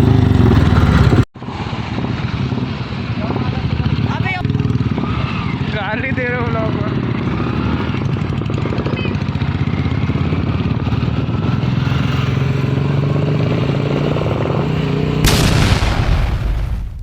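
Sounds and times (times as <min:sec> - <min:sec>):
sudden loud exhaust burst: 0:15.2 - 0:17.0.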